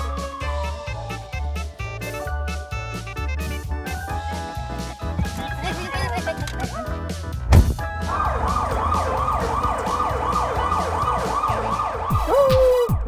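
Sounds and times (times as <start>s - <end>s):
thump: 5.2s - 6.7s, 7.5s - 8.0s
yelping siren: 8.1s - 12.9s.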